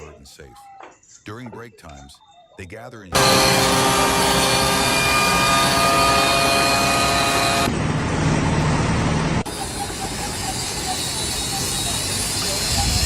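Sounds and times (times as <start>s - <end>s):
loud engine noise: 3.1s - 13.0s.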